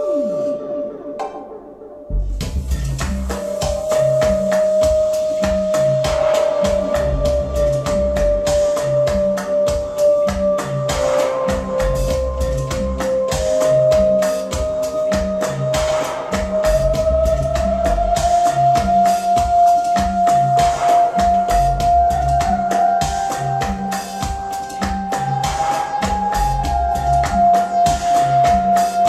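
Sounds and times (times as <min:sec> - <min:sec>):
instrumental music over loudspeakers: 0:00.0 - 0:29.0
bass line: 0:02.1 - 0:04.8, 0:05.4 - 0:09.4, 0:10.4 - 0:14.4, 0:16.5 - 0:19.0, 0:19.9 - 0:22.7, 0:24.9 - 0:29.0
steady drum beat: 0:02.1 - 0:29.0.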